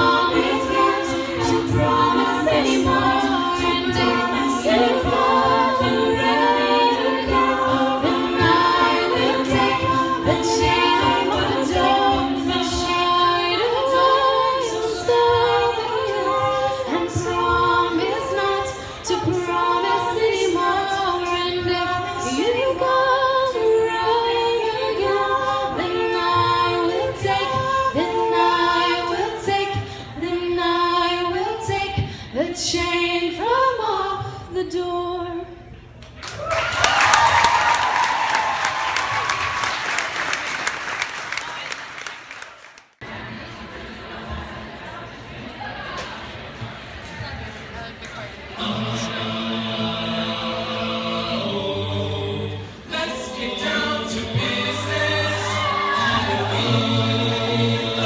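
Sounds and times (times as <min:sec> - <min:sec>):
a cappella group singing: 0:00.0 - 0:35.4, 0:48.4 - 0:58.0.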